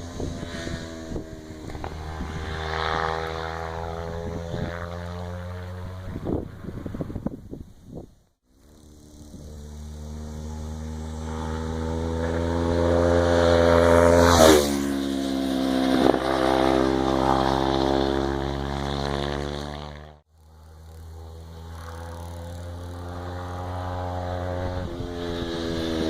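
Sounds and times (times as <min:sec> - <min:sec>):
motorcycle engine running: 0:00.0 - 0:07.6, 0:08.5 - 0:26.0
vehicle passing close: 0:08.5 - 0:26.0.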